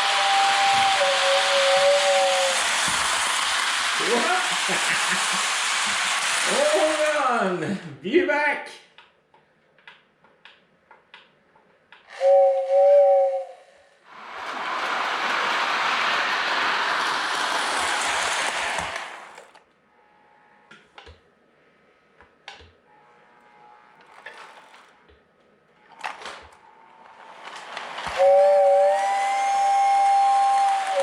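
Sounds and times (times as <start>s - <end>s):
toy train steam whistle: 0.0s - 7.2s, 12.0s - 14.0s, 27.5s - 31.0s
toy train steam hiss: 0.0s - 7.8s, 12.1s - 19.5s, 27.2s - 31.0s.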